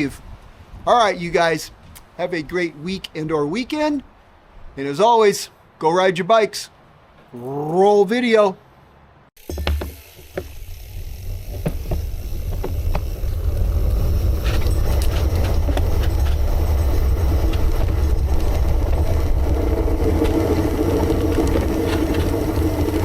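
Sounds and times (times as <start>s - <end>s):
wind rumble on microphone: 0.0s - 2.2s, 11.1s - 23.0s
bike clicks and rattles: 9.4s - 23.0s.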